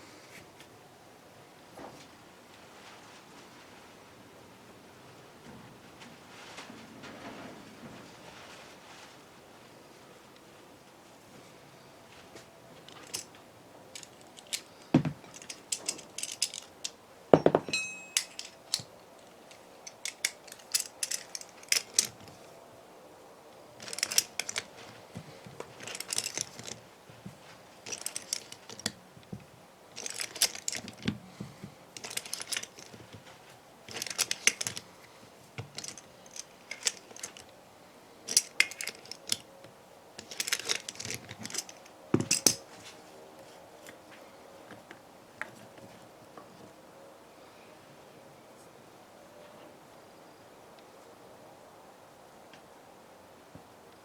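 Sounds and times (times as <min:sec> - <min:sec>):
metal tools clinking: 0:12.9 - 0:13.3, 0:14.0 - 0:22.4, 0:23.8 - 0:25.0, 0:25.7 - 0:26.8, 0:27.8 - 0:29.0, 0:30.0 - 0:31.2, 0:32.0 - 0:33.2, 0:33.9 - 0:34.9, 0:35.6 - 0:37.5, 0:38.3 - 0:39.4, 0:40.2 - 0:42.8
dull knocks: 0:17.4 - 0:17.8.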